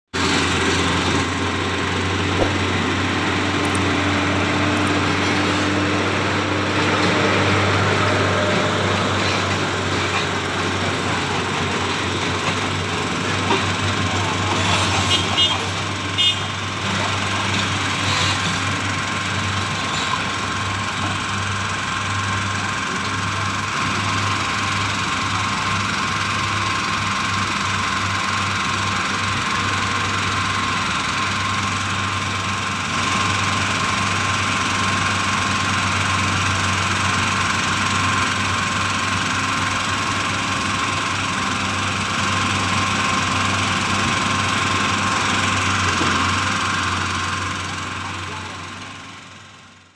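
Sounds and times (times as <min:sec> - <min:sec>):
excavator diesel engine running: 0:00.1 - 0:49.9.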